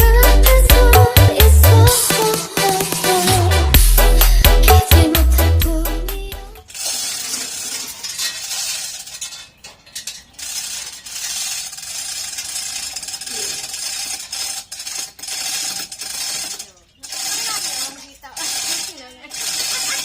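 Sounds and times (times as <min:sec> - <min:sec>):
ratchet clicking: 0:06.2 - 0:09.4, 0:10.0 - 0:20.0
hoist chain rattling: 0:06.2 - 0:20.0.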